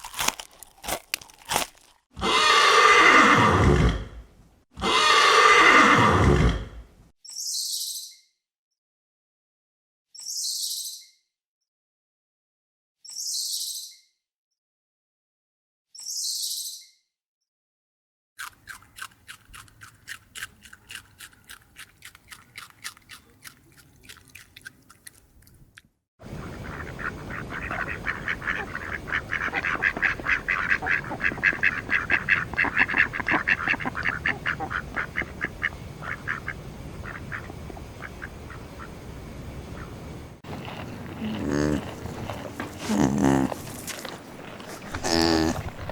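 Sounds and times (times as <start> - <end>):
background noise: 0.0 - 7.4, 18.4 - 45.9
rapid animal calls: 26.3 - 38.9, 39.8 - 45.9.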